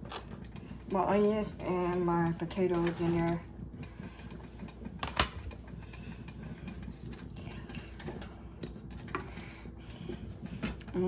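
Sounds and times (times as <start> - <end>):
kitchen handling sounds: 0.0 - 3.5.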